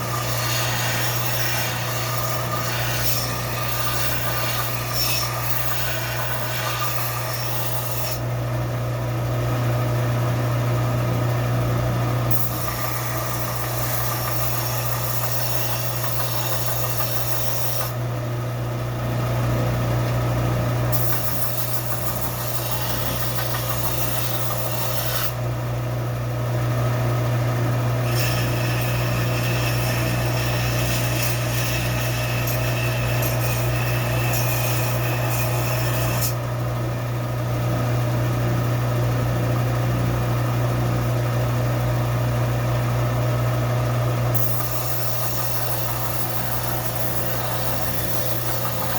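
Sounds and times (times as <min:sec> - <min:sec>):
metal blade grinding on belt: 0:00.0 - 0:08.2, 0:20.9 - 0:25.4, 0:28.0 - 0:36.4, 0:44.4 - 0:48.9
belt sander motor hum: 0:00.0 - 0:08.7, 0:19.5 - 0:36.8, 0:42.9 - 0:48.9.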